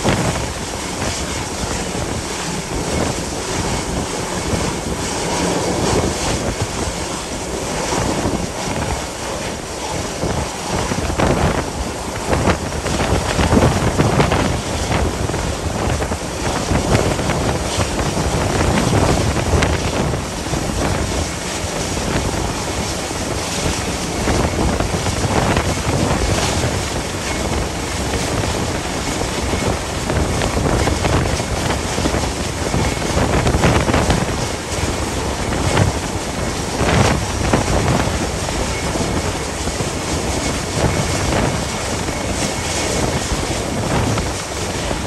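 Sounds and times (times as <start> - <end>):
wind buffeting microphone: 0.0 - 45.0.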